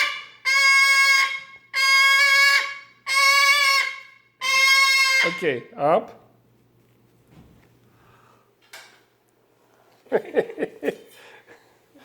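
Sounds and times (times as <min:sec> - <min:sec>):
cockatoo honking calls: 0:00.0 - 0:05.6.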